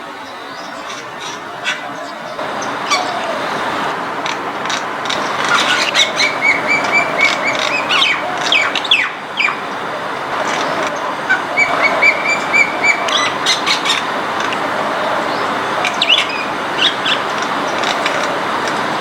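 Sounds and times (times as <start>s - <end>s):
bird squawking and whistling: 0.0s - 3.4s
steady background noise: 0.0s - 19.0s.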